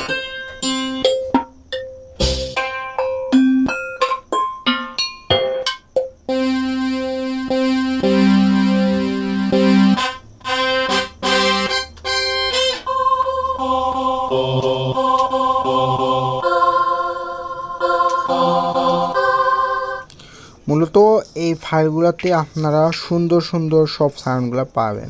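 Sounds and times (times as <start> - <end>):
held keyboard-like tones: 6.3 - 10.2.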